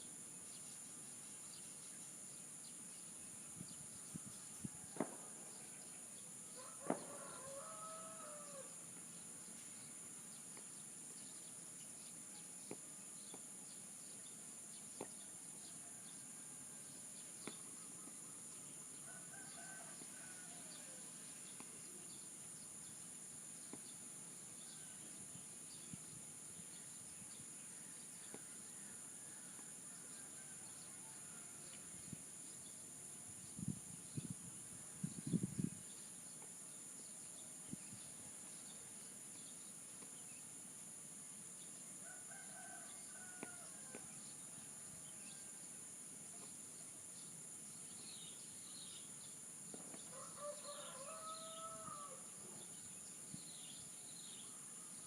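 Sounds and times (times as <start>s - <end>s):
distant rooster crowing: 4.6s - 5.9s, 6.5s - 8.8s, 19.0s - 21.1s, 42.0s - 44.2s, 50.0s - 52.3s.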